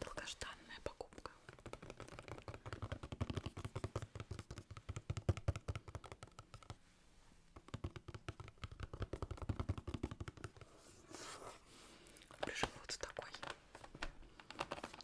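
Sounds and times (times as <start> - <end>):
rapid tapping and clicking: 1.2 - 6.8, 7.6 - 10.6.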